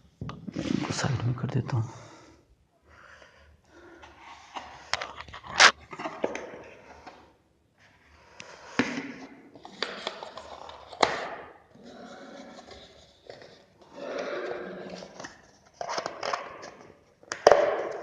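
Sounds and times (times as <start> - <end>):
packaging rustling and scraping: 9.6 - 14.0.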